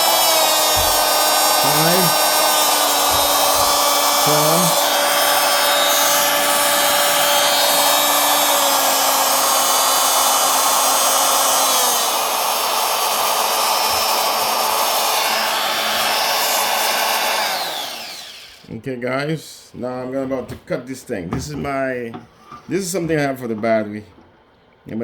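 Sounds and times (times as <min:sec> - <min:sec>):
oscillating multi-tool running: 0:00.0 - 0:18.6.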